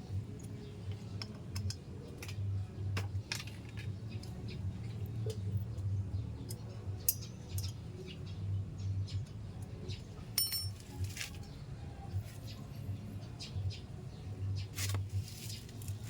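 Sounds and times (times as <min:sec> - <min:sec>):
metal clinks of hand tools: 0:10.4 - 0:10.9.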